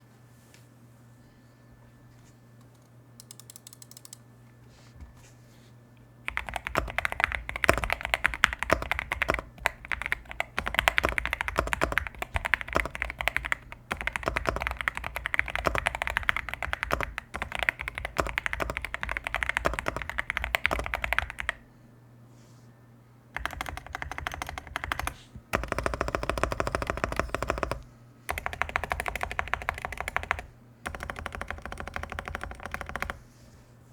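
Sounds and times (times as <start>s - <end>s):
mechanical keyboard typing: 3.2s - 4.2s, 6.3s - 21.6s, 23.4s - 33.2s.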